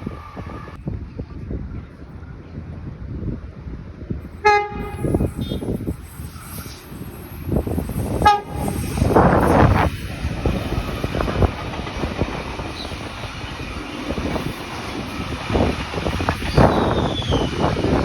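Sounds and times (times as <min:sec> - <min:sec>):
train horn toot: 0:04.4 - 0:05.8, 0:08.2 - 0:09.0
train wheels clattering on track: 0:07.5 - 0:18.0.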